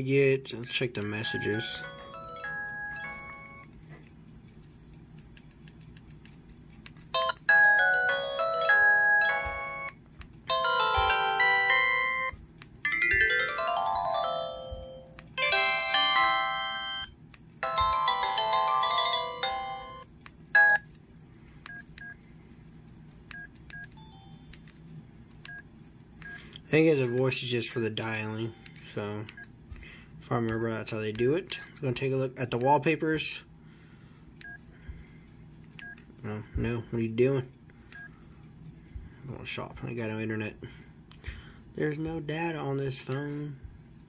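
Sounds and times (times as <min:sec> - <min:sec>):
phone alert tones: 0:01.0 - 0:03.8, 0:07.2 - 0:20.0, 0:20.6 - 0:20.9.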